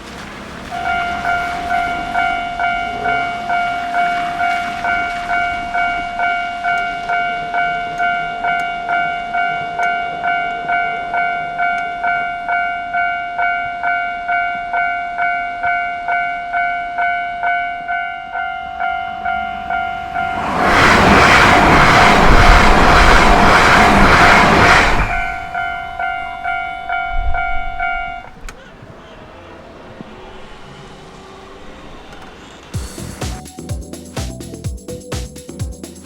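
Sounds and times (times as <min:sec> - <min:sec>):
level crossing bell ringing: 0:00.8 - 0:20.4, 0:25.5 - 0:28.4
steady ringing tone: 0:00.8 - 0:20.9, 0:25.1 - 0:28.3.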